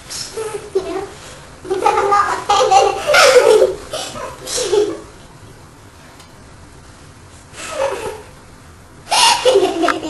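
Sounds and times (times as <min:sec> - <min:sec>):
high-pitched women laughing: 0:09.1 - 0:10.0.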